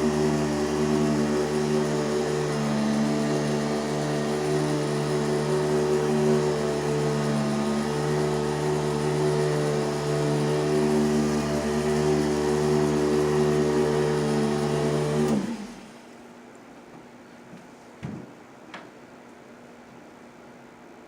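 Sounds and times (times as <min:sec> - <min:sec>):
electric massager humming: 0:00.0 - 0:15.7.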